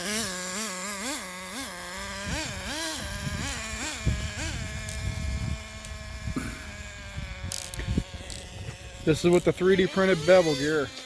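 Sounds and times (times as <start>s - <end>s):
rc nitro engine revving and idling: 0.0s - 11.0s.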